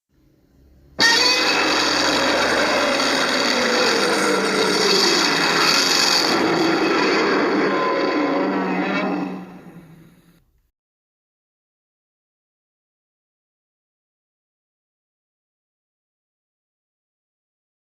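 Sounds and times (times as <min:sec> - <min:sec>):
monster roar: 0:01.0 - 0:10.2.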